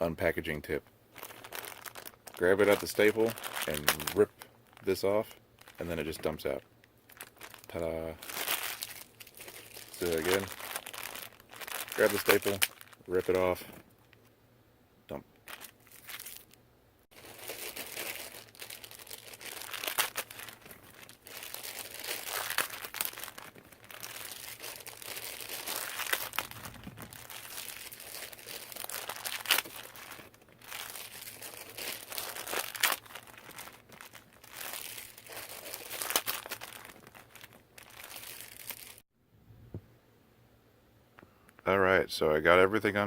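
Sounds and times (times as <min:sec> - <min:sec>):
plastic bag crinkling: 0:01.1 - 0:13.7, 0:15.4 - 0:39.0
plastic bag ripping: 0:01.2 - 0:05.0, 0:07.1 - 0:13.6, 0:17.2 - 0:39.0.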